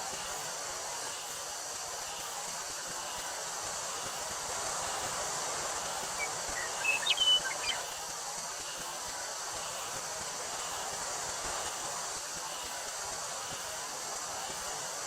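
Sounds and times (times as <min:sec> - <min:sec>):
cicadas droning: 0:00.0 - 0:15.0
wind through a wheat field: 0:00.0 - 0:15.0
bird chirping: 0:06.1 - 0:08.0.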